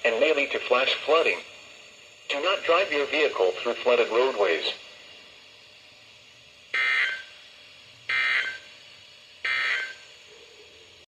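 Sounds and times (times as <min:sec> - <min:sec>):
buzzy digital data bursts: 0:06.7 - 0:07.4, 0:08.1 - 0:08.8, 0:09.4 - 0:10.1.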